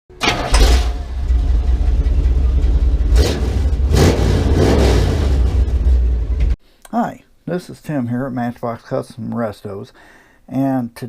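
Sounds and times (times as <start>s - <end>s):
car engine revving: 0.2s - 6.6s.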